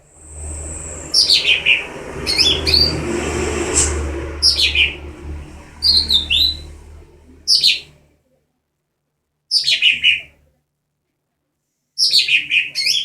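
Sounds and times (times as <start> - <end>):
low hum: 0.0 - 8.2
young songbird chirping: 7.5 - 7.9, 9.5 - 10.3, 12.0 - 13.0.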